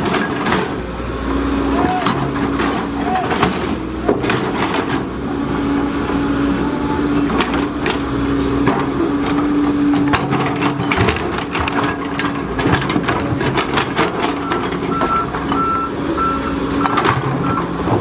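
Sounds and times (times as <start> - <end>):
excavator engine and hydraulics whine: 0.0 - 18.0
metal clanks and knocks: 2.0 - 5.1, 7.2 - 16.0, 16.7 - 18.0.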